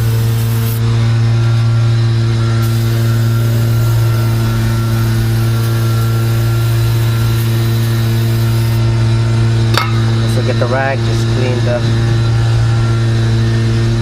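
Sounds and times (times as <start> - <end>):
aerosol spray hissing: 0.0 - 0.8, 2.6 - 8.8
electrical hum: 0.0 - 14.0.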